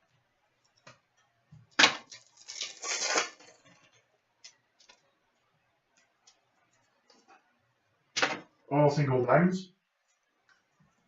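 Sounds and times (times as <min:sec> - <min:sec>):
foil pack crinkling and tearing: 0:02.0 - 0:03.6.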